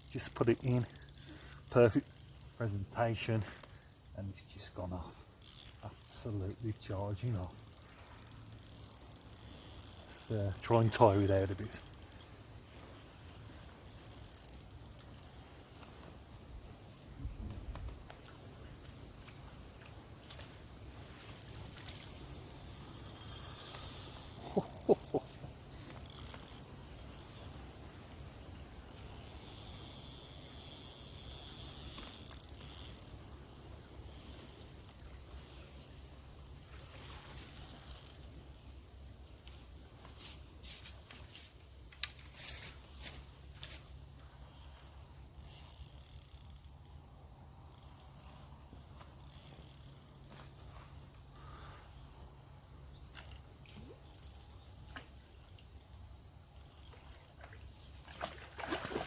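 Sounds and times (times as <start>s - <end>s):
small bird chirping: 21.5s - 41.2s, 43.6s - 51.8s.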